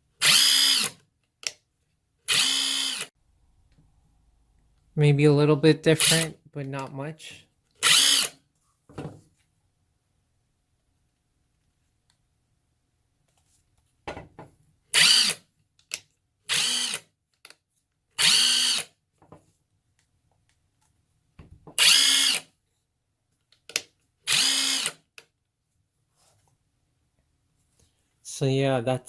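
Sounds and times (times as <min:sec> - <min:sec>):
impact wrench motor spinning: 0:00.2 - 0:01.0, 0:02.3 - 0:03.1, 0:07.8 - 0:08.4, 0:15.0 - 0:15.4, 0:16.5 - 0:17.1, 0:18.2 - 0:18.9, 0:21.8 - 0:22.5, 0:24.3 - 0:25.0.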